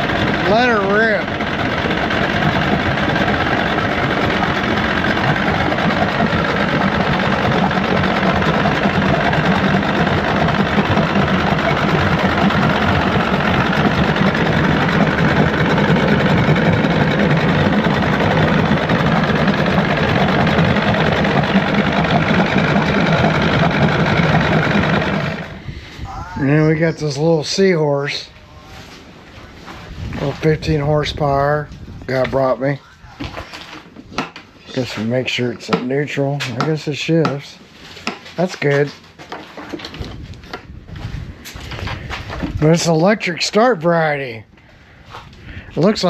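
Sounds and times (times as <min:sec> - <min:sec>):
outboard motor running: 0:00.0 - 0:28.3, 0:30.1 - 0:37.4.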